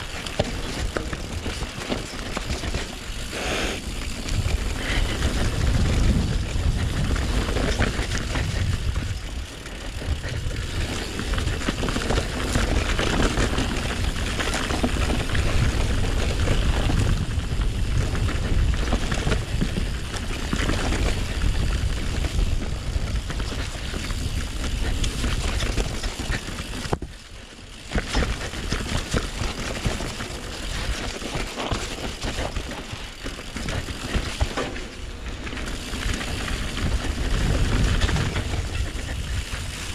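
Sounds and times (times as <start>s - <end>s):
bike rattling over bumps: 0.0s - 39.9s
tyres rolling over rough ground: 0.0s - 39.9s
wind rushing over microphone: 3.3s - 27.1s, 35.7s - 39.9s.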